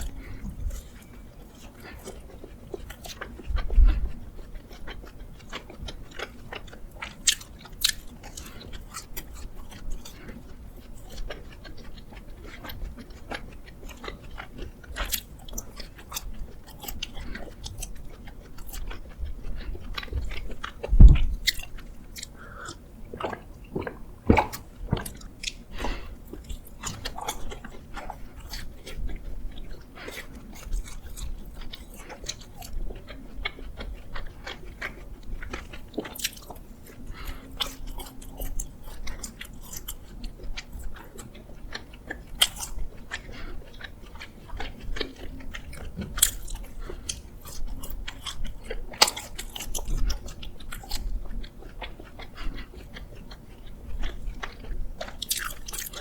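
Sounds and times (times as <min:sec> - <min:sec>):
person chewing: 0:00.0 - 0:56.0
mouth clicks and smacks: 0:12.6 - 0:43.5.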